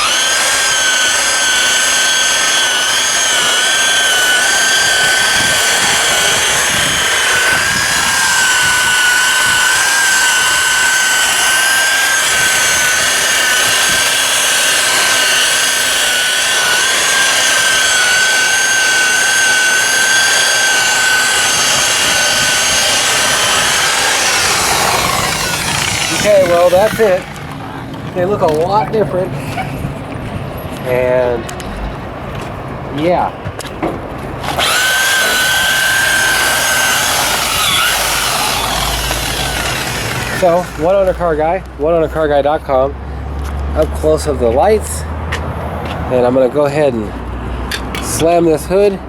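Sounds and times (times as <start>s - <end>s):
power buffer whining: 0.0s - 29.7s, 34.3s - 41.9s.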